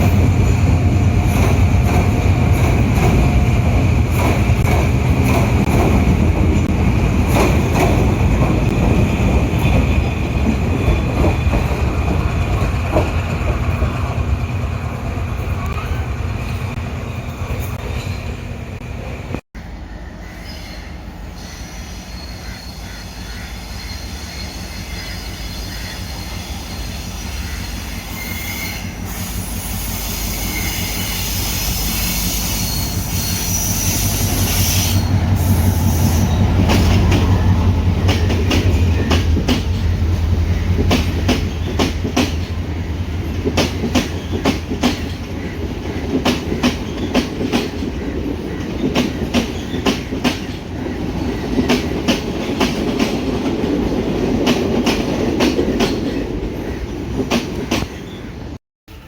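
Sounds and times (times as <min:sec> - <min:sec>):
wheels clickety-clack on rail joints: 0:00.0 - 0:18.3, 0:24.4 - 0:58.2
high wheel squeal: 0:20.2 - 0:37.5
locomotive engine drone: 0:33.8 - 0:41.4.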